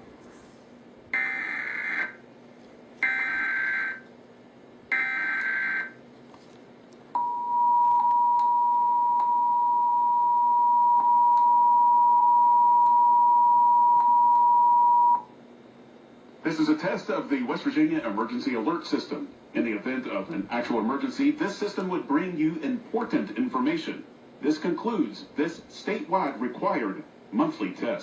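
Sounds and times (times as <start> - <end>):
two-tone attention signal: 1.2 - 2.2, 4.9 - 5.9, 7.2 - 15.2.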